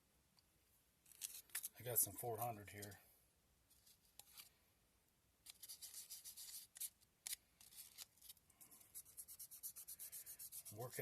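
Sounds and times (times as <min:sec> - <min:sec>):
sandpaper scratching on wood: 0:09.0 - 0:11.0.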